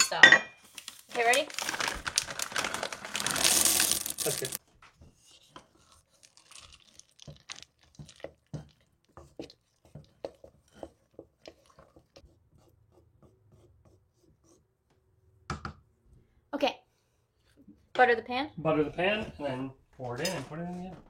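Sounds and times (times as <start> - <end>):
spoon stirring thick batter: 3.8 - 15.0.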